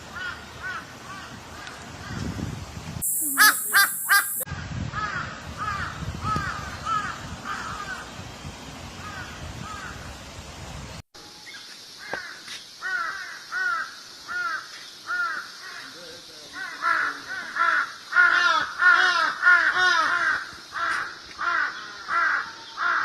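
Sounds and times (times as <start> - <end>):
crows cawing: 3.4 - 4.4, 5.0 - 8.0, 12.0 - 23.0.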